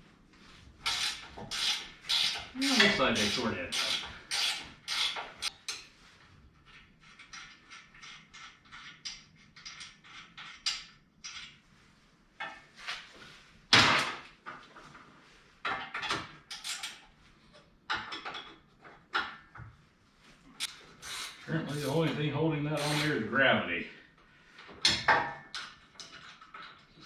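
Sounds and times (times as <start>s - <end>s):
hand tools clicking and scraping: 0.8s - 6.0s, 20.6s - 23.2s.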